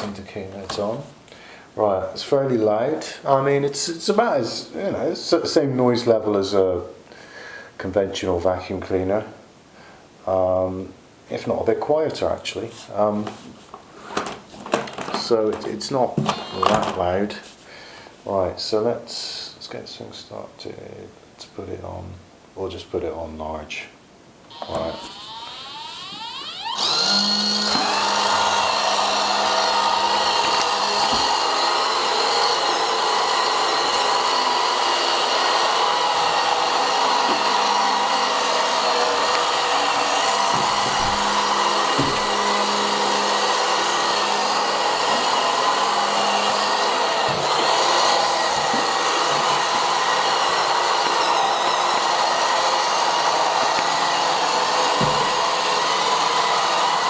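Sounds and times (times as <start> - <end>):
robotic vacuum motor whine: 16.2 - 17.0, 24.5 - 57.0.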